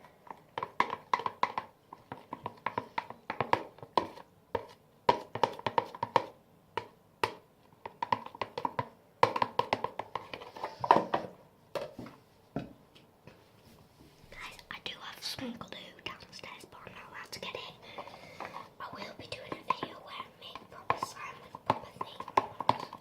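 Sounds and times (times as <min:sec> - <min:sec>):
stirrer knocking against container: 0:00.2 - 0:11.1, 0:19.4 - 0:23.0.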